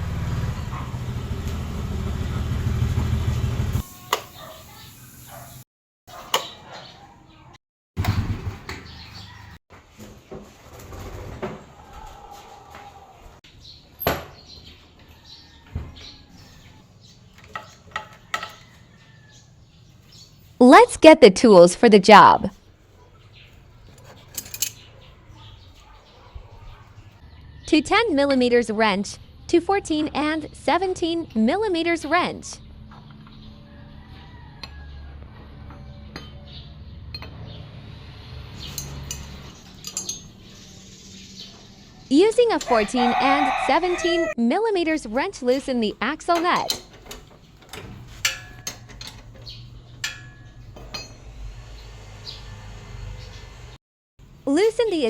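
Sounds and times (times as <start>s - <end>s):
faint birds chirping: 4.2s - 7.6s, 8.7s - 9.6s, 11.8s - 20.6s, 22.5s - 27.8s, 32.4s - 55.0s
wrenches clinking on metal: 17.3s - 18.8s, 23.8s - 25.0s, 38.7s - 40.6s, 45.2s - 51.6s.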